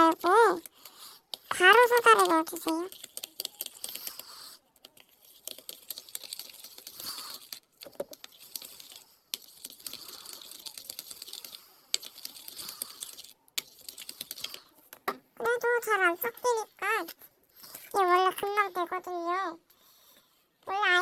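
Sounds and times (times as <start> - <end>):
slime stirring sticky crackling: 0.0 - 14.9.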